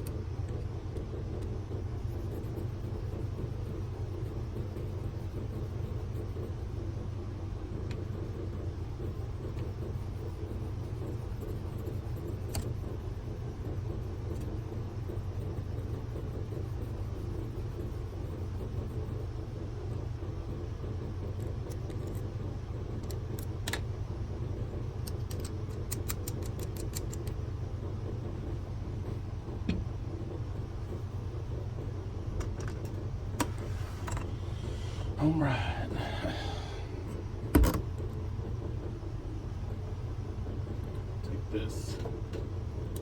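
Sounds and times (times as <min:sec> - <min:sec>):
machine motor humming: 0:27.0 - 0:43.0.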